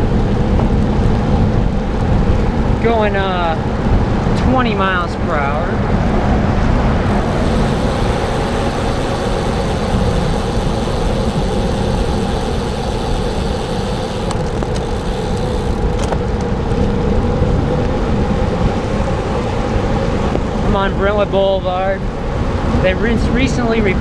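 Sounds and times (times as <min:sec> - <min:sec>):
bicycle tyres on wet road: 0:00.0 - 0:04.4, 0:05.8 - 0:24.0
car traffic: 0:00.0 - 0:23.7
wind rushing: 0:05.7 - 0:22.9
rain: 0:07.1 - 0:21.4, 0:22.0 - 0:24.0.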